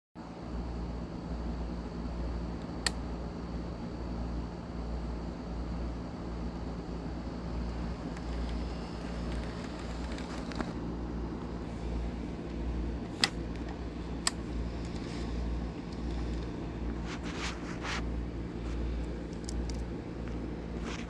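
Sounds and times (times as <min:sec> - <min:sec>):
sharp clicks: 0:12.5 - 0:15.1.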